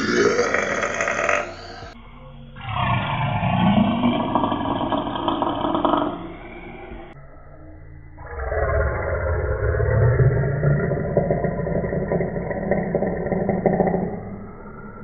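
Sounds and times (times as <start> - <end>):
person belching: 0.0 - 2.0, 9.7 - 14.4
slowed down belch rumble: 0.0 - 2.0, 2.6 - 7.2, 8.2 - 15.0.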